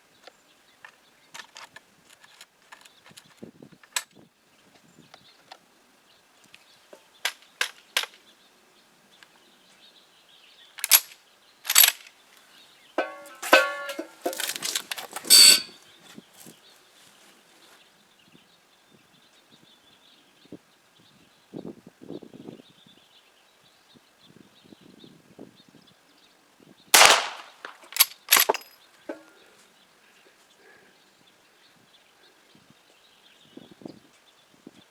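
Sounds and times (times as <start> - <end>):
rifle lever clicks and clacks: 10.8 - 12.1, 27.0 - 28.7
rifle shot with echo: 27.0 - 27.6.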